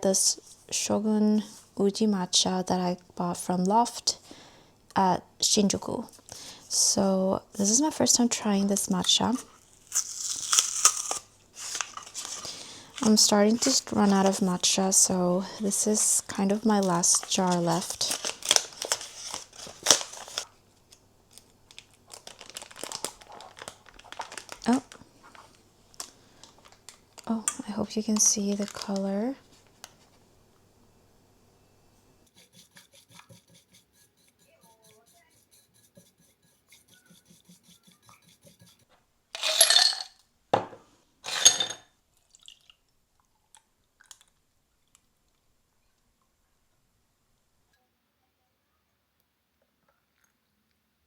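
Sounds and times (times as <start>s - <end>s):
packaging crinkling and rustling: 9.5s - 14.7s, 15.9s - 30.2s
rhythmic whisk scraping: 32.3s - 39.0s
kitchenware clattering: 39.4s - 42.0s.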